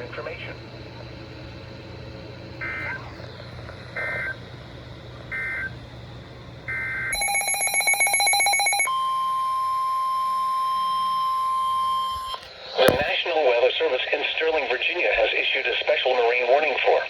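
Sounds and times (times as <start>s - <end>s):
steady warning alarm tone: 5.3s - 5.8s, 6.7s - 12.1s.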